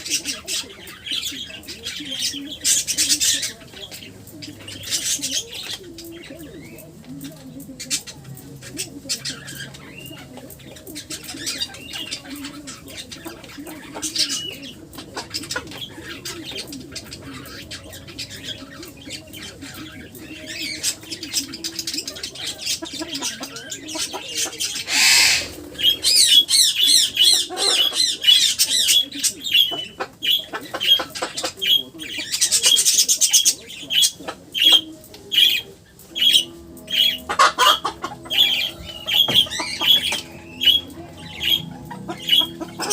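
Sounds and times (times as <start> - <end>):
pet birds chirping: 0.0 - 42.9
bird squawk: 21.8 - 42.9.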